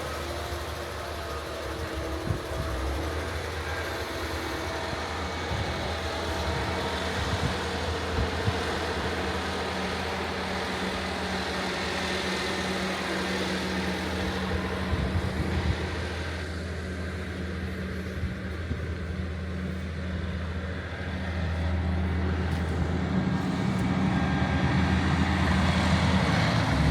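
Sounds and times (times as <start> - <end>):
diesel machinery engine drone: 0.0 - 26.9.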